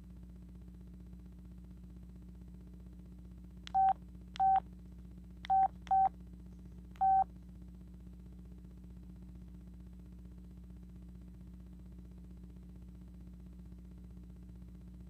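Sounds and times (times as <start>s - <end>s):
phone keypad beeps: 3.7s - 4.6s, 5.5s - 6.1s, 7.0s - 7.2s.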